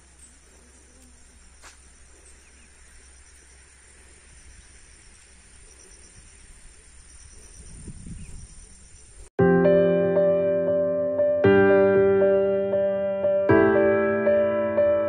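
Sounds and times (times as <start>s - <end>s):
insects chirring: 0.0s - 9.3s.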